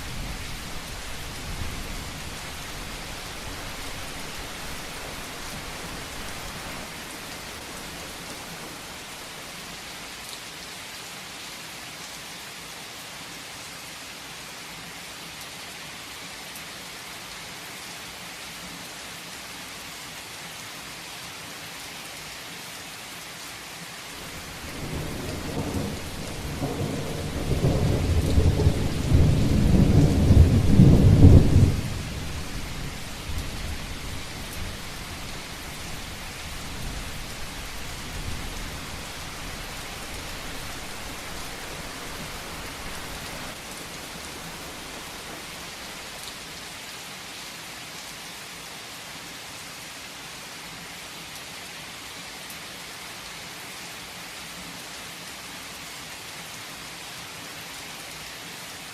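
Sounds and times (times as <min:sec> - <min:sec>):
thunder rumbling: 0:00.0 - 0:09.2, 0:24.2 - 0:46.0
heavy rain falling: 0:00.0 - 0:11.8, 0:22.0 - 0:48.1.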